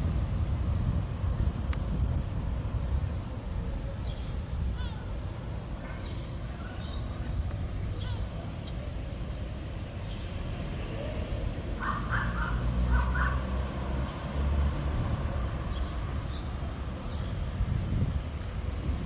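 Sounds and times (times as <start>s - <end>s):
steady low rumble: 0.0s - 9.7s, 14.7s - 19.0s
bird calls: 3.2s - 9.2s, 9.8s - 19.0s.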